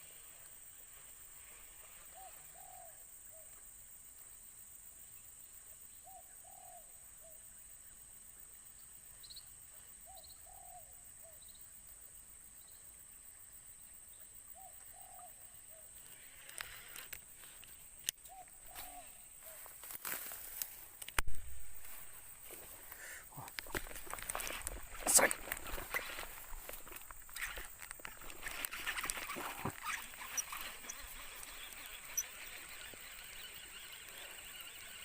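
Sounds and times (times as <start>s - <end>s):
dove cooing: 2.1s - 3.5s, 6.0s - 7.4s, 10.0s - 11.4s, 14.6s - 15.9s, 18.3s - 19.6s.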